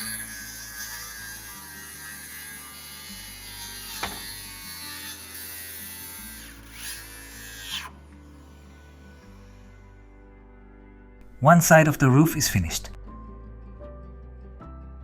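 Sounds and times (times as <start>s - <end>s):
power tool whirring: 0.0s - 9.9s
background music: 0.0s - 15.0s
sharp knock: 4.0s - 4.2s.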